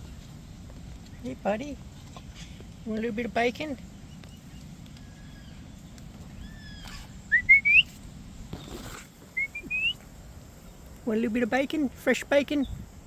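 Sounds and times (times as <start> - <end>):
short rustle: 4.2 - 11.1
person whistling: 7.3 - 7.9, 9.4 - 10.0.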